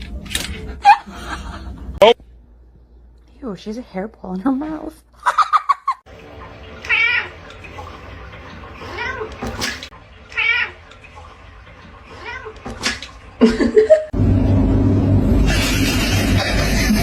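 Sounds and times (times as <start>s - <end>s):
cat yowling: 6.8s - 7.4s, 10.3s - 10.8s.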